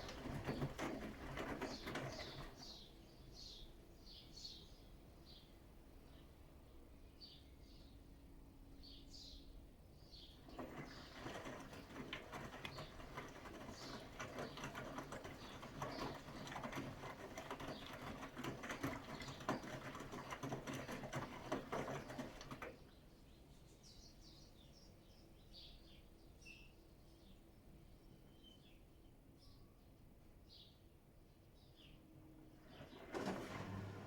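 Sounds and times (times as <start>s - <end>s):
washing machine drum turning: 0.0s - 2.6s, 10.4s - 22.8s, 32.6s - 34.0s
wet laundry tumbling and splashing: 0.0s - 2.7s, 10.4s - 22.8s, 32.7s - 34.0s
birds chirping faintly: 0.0s - 34.0s.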